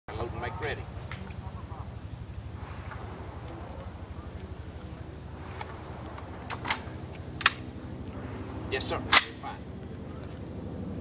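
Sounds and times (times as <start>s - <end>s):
steady low rumble: 0.1s - 11.0s.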